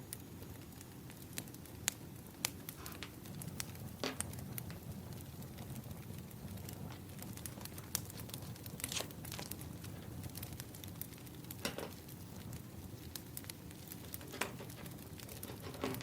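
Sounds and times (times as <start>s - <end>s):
wood fire crackling and popping: 0.0s - 16.0s.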